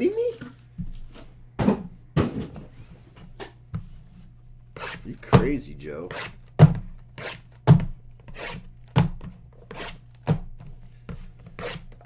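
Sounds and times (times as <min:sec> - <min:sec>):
cards scraping on a table: 0:10.6 - 0:12.0.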